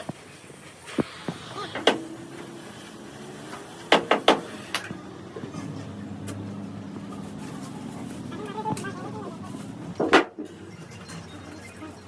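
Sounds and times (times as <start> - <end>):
sharp knocks: 3.9 - 4.5.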